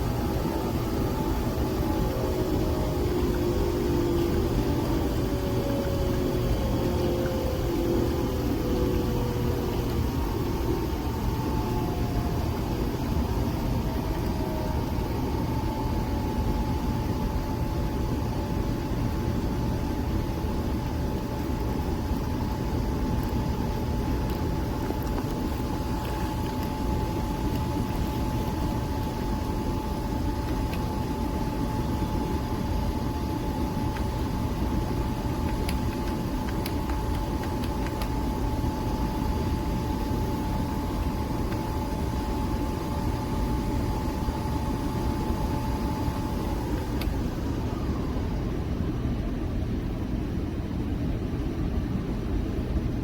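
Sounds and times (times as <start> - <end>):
coffee machine motor whining: 0.0 - 12.4.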